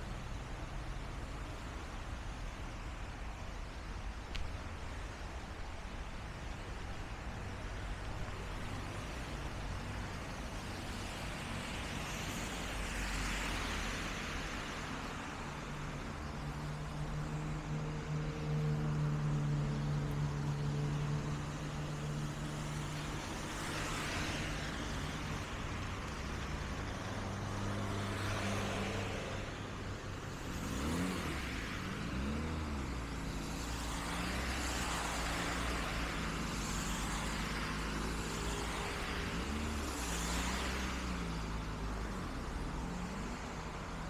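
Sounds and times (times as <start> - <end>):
tyres hissing on wet road: 0.0 - 44.0
vehicle engines running: 30.1 - 44.0.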